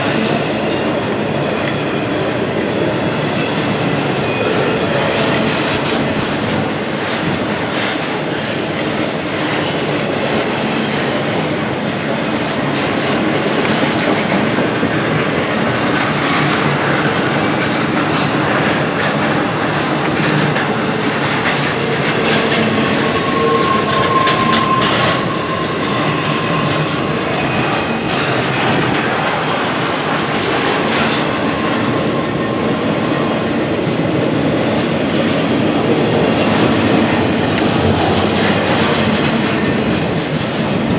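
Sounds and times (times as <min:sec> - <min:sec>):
freight train rumbling on rails: 0:00.0 - 0:40.9
high wheel squeal: 0:21.1 - 0:28.8.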